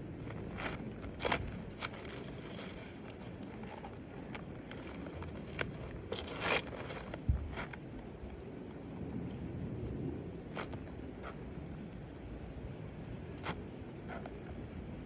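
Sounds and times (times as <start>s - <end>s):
roof shingles scraping and tapping: 0.1s - 7.8s.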